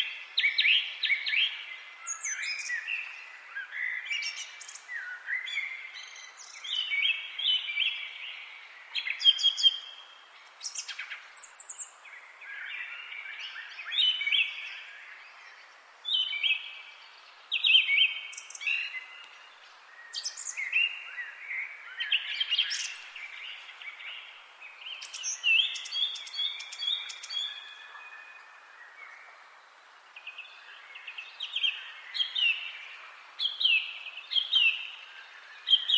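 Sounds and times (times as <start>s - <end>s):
faint steady background hiss: 0.0s - 35.9s
songbirds singing: 0.0s - 35.9s.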